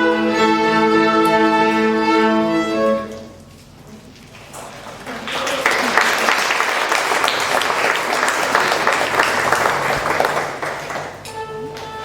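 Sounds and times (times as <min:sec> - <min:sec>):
audience applauding: 0:04.3 - 0:12.0.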